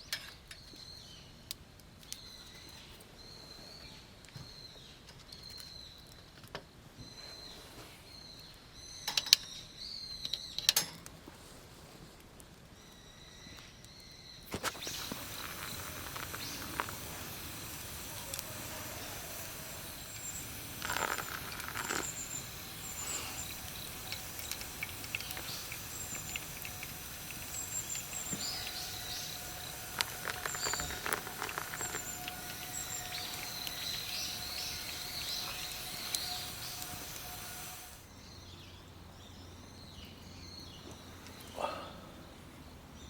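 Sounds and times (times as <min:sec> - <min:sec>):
scattered clicks: 0:14.5 - 0:37.4
steady hiss: 0:14.5 - 0:39.0.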